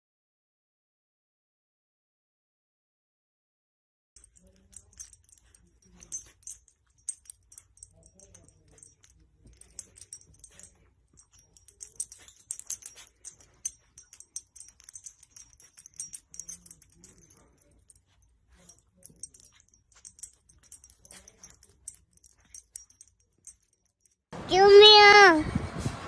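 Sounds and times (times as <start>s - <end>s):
dog tags jingling: 4.2s - 25.2s.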